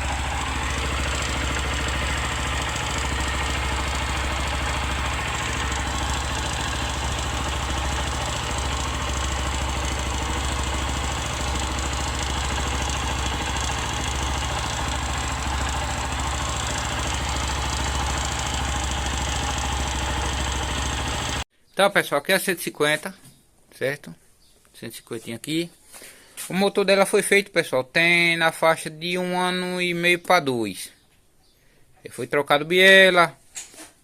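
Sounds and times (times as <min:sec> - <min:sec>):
motorcycle engine idling: 0:00.0 - 0:21.4.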